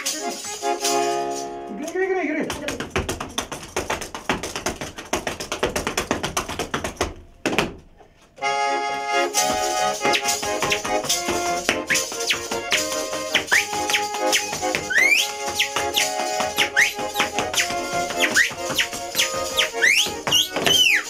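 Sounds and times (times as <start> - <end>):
spoons clattering rhythmically: 0.0 - 1.5, 9.4 - 21.0
button accordion playing: 0.0 - 2.0, 8.4 - 21.0
rising whistled notes: 13.4 - 17.0, 18.2 - 21.0.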